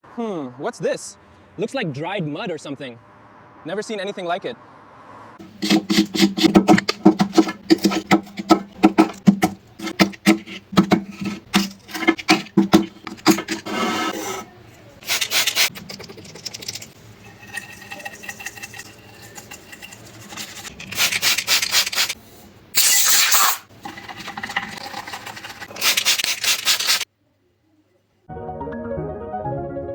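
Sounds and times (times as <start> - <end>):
brush scrubbing glass: 5.4 - 22.2, 23.8 - 27.0.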